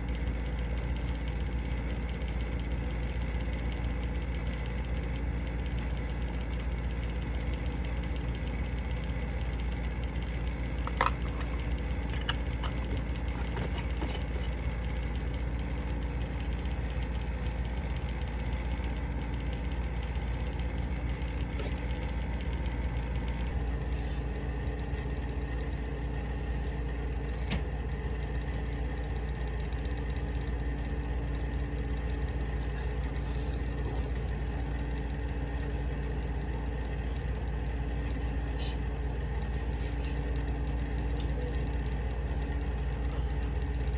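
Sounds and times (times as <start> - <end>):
low machine hum: 0.0 - 43.9.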